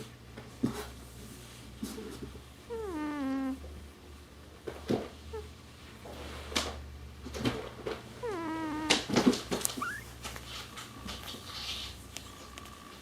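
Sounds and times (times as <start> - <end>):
kitten mewing: 8.2 - 9.0, 9.7 - 10.2
kitten squeak: 9.7 - 10.2.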